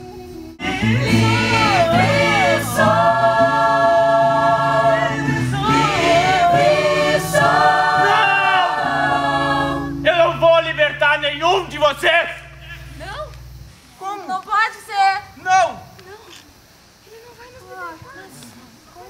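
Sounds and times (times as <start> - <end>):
steady low backing: 0.0 - 14.4
choir singing held notes: 0.6 - 13.2.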